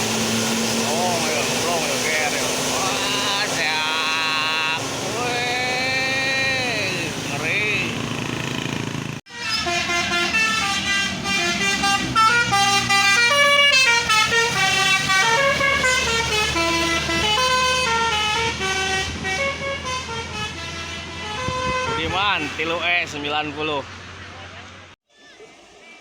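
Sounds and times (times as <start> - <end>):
bus air horn melody: 9.3 - 22.8.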